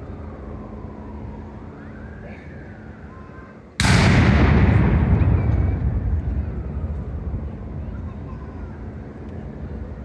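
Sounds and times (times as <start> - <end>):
wind: 0.0 - 10.0
saluting gun blast with echo: 3.8 - 8.0
low rumble: 3.8 - 10.0.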